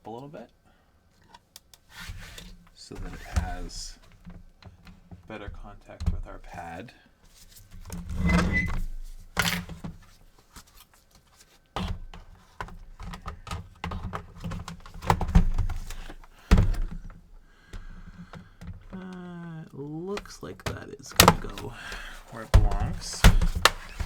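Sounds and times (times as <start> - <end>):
clicks and taps of plastic parts: 20.1 - 24.0.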